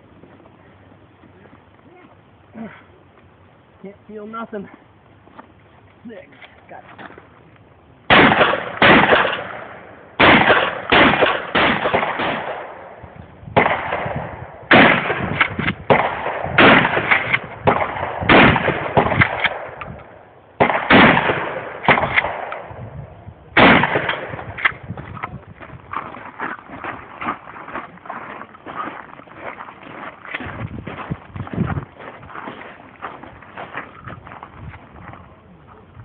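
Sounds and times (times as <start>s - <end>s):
shotgun shots echoing: 8.1s - 13.0s, 13.6s - 22.8s, 23.6s - 24.9s.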